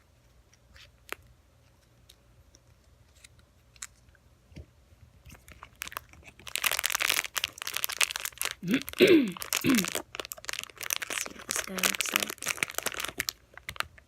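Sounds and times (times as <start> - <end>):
plastic packaging crinkling: 5.2 - 14.0.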